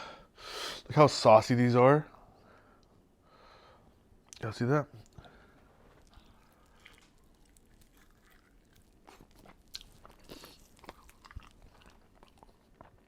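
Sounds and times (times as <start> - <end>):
chewing and biting: 5.8 - 13.0.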